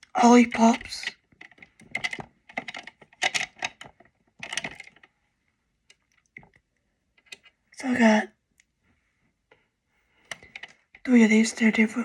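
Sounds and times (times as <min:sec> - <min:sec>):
plastic toy pieces clicking: 0:00.1 - 0:05.1.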